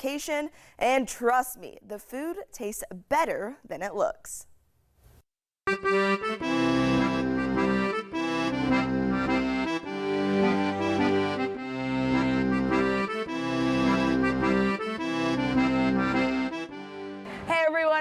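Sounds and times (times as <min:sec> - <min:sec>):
lively accordion music: 0:05.7 - 0:17.6.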